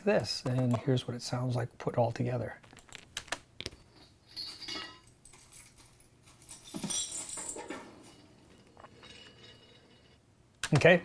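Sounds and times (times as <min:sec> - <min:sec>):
chains rattling: 0:03.9 - 0:10.2.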